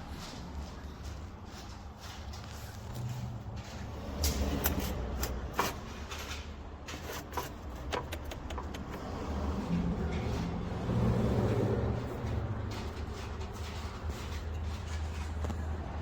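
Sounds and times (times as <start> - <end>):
sharp clicks and knocks: 4.2 - 9.2.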